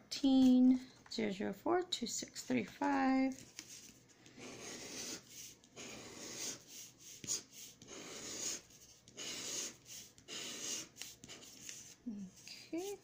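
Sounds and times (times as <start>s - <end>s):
scratch-off ticket being scratched: 3.4s - 13.0s.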